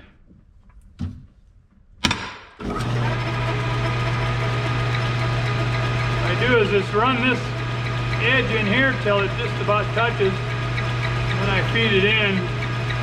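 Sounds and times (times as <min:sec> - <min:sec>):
metal lathe motor hum: 0:02.6 - 0:13.0.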